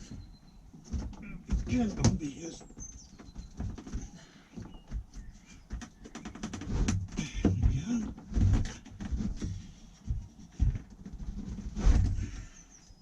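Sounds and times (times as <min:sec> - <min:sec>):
knocks and scrapes of fridge: 0:04.7 - 0:12.5.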